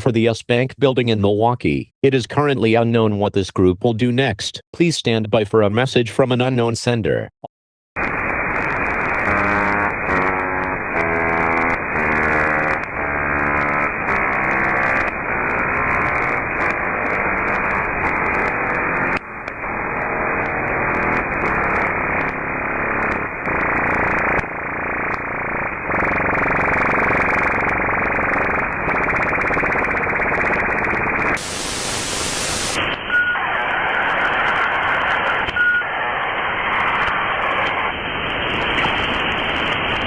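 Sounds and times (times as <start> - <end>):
harsh radio static: 8.0 - 40.0
shifting pitched tones: 8.5 - 28.0.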